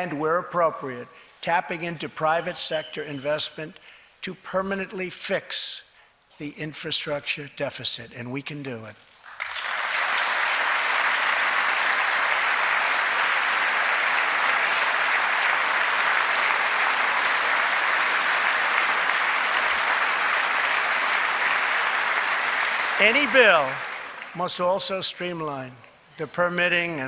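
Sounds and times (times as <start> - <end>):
large audience applauding: 9.2 - 24.8.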